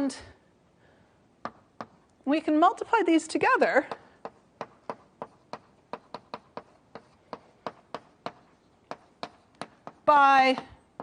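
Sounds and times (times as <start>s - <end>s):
chalk tapping on a board: 1.4s - 2.0s, 3.9s - 11.0s.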